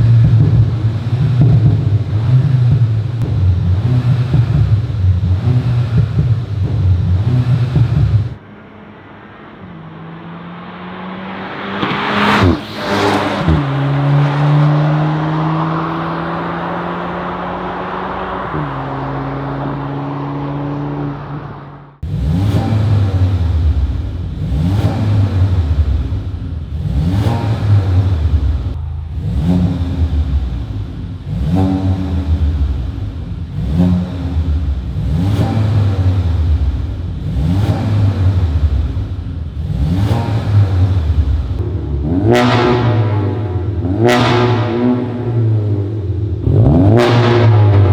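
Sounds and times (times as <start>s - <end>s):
car engine revving: 0.0s - 47.9s
car driving past: 7.4s - 22.0s.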